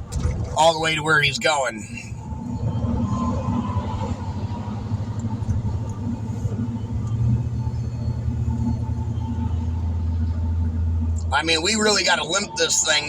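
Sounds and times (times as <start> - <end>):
road noise: 0.0 - 13.0
vehicle engine rumble: 0.0 - 13.0.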